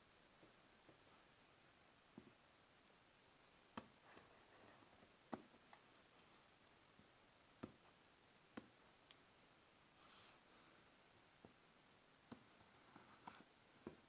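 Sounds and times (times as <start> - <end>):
faint sharp clicks and taps: 0.3 - 1.3, 2.1 - 2.5, 3.7 - 9.3, 11.4 - 14.0.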